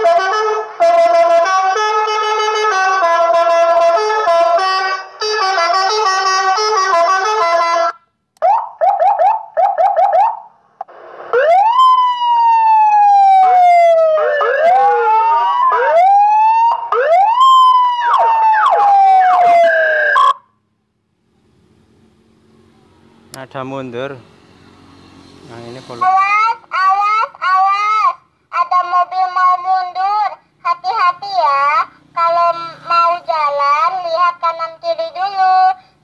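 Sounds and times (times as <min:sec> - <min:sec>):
electronic horn melody: 0:00.0 - 0:08.1
electronic siren sweeping: 0:08.4 - 0:10.5, 0:11.2 - 0:20.5.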